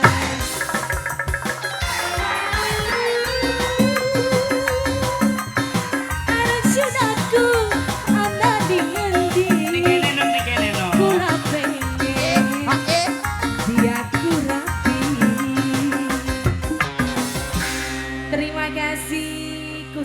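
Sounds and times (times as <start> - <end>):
steady drum beat: 0.0 - 18.0
pitch-bending instrumental melody: 0.0 - 20.0.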